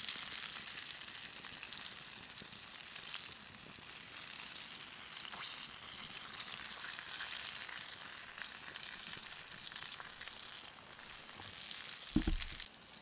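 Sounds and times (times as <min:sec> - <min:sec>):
fish frying in hot oil: 0:00.0 - 0:11.0.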